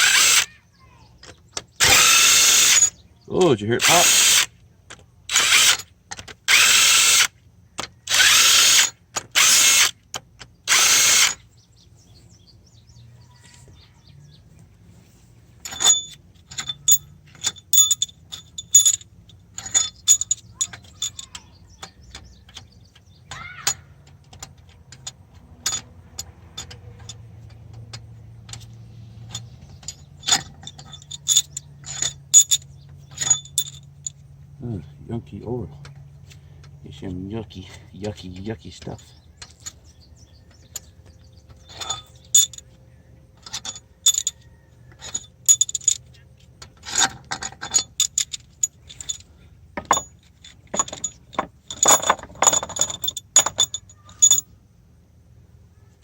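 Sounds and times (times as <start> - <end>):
power tool spinning bolts: 0.0 - 0.5, 1.2 - 4.5, 5.3 - 11.5, 15.6 - 28.7, 41.5 - 42.7, 46.7 - 54.5
metallic clinks of hand tools: 15.6 - 22.7, 29.3 - 34.2, 41.5 - 42.8, 43.4 - 54.6.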